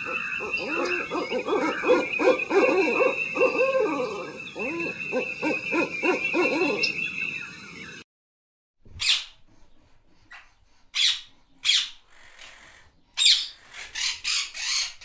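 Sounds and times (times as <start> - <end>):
birds hooting: 0.0 - 8.0.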